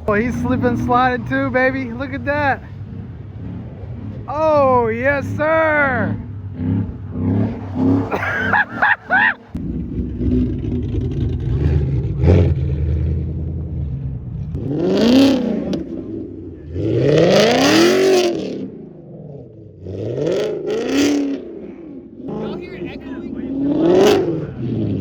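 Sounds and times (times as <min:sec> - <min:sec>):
car engine revving hard: 0:05.4 - 0:25.0.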